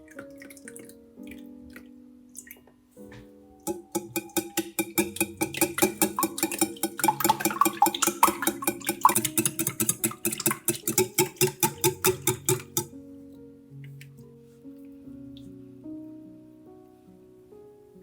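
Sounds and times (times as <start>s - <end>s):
soft background music: 0.0s - 18.0s
kitchen utensil clicking rapidly: 3.7s - 12.9s.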